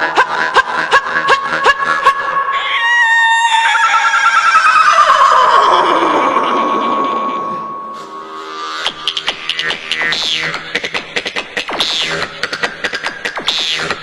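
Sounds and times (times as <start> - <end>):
jaw harp twanging: 6.4 - 14.0.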